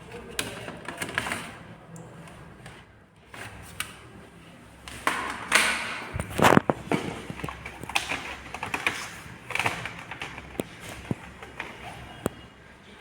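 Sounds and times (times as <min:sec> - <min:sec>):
tools clicking on plastic laptop case: 0:05.1 - 0:11.8.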